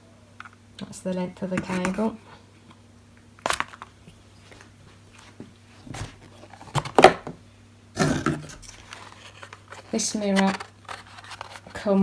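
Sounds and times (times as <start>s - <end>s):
knocks and rustles from unpacking: 4.5s - 7.4s.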